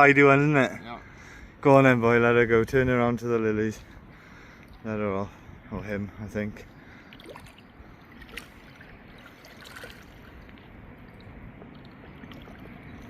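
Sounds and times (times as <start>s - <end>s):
water sloshing at bank: 6.7s - 13.0s
fish splashing: 7.0s - 13.0s.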